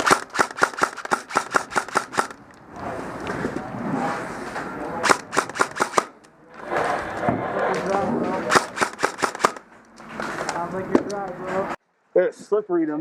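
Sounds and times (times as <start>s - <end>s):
airsoft gun shots: 0.0s - 2.4s, 5.0s - 6.2s, 8.5s - 9.6s.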